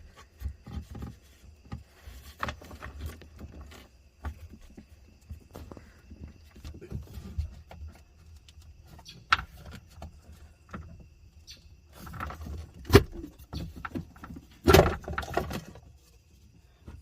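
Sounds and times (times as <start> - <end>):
plastic box clicks and rattles: 12.0 - 15.8.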